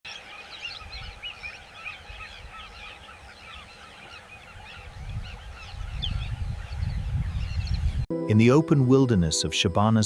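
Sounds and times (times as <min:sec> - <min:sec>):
birds chirping in chorus: 0:00.1 - 0:08.0.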